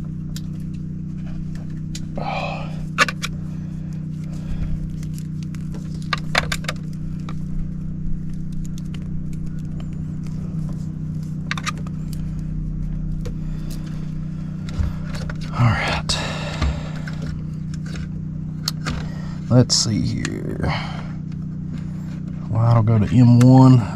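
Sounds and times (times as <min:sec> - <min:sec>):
steady low hum: 0:00.0 - 0:23.9.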